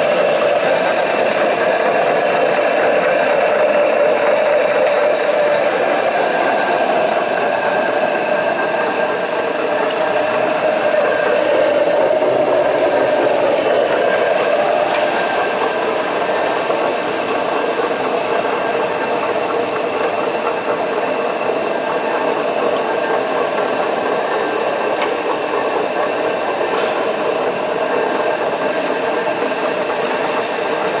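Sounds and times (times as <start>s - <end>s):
grinder hum and whine: 0.0s - 31.0s.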